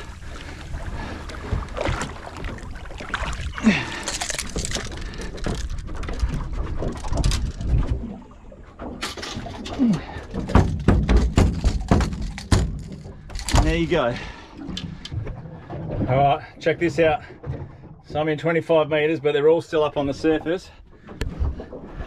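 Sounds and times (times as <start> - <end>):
water lapping against boat hull: 0.0 - 22.0
knocks on boat: 10.4 - 13.8.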